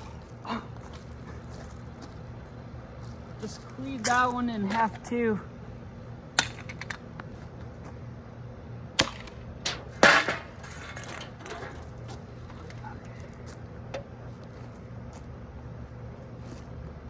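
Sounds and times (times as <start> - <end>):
axe chopping strikes: 9.0 - 9.4.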